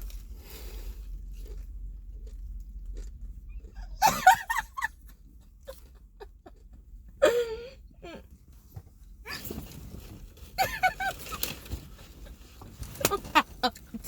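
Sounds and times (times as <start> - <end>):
crunchy chewing: 0.0 - 4.0.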